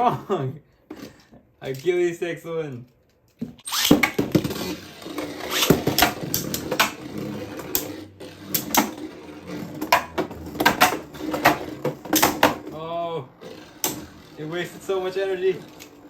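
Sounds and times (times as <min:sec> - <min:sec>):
spinning tops clacking: 0:03.6 - 0:12.7
spinning tops whirring: 0:03.6 - 0:16.0.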